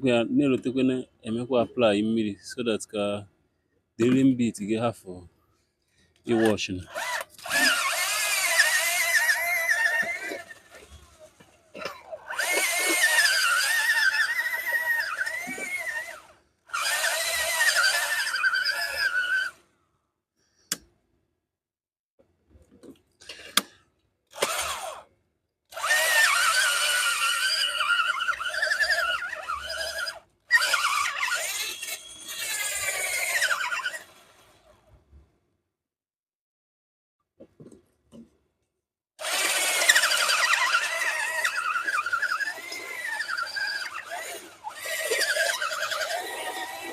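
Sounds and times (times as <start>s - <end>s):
power drill cutting steel: 6.3s - 11.2s, 12.1s - 19.6s, 24.4s - 25.1s, 25.7s - 34.8s, 39.2s - 46.9s.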